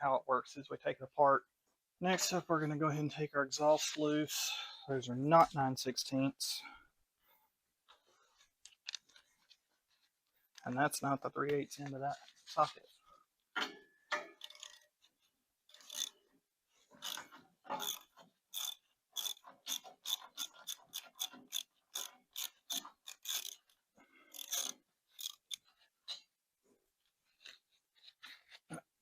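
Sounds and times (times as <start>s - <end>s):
hand ratchet clicking: 14.1s - 14.9s, 15.7s - 16.2s, 17.0s - 25.7s.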